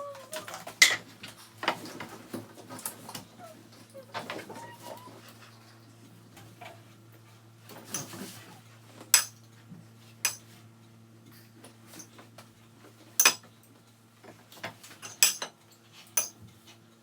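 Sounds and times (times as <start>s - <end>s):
cutlery clinking on plates: 16.2s - 16.4s.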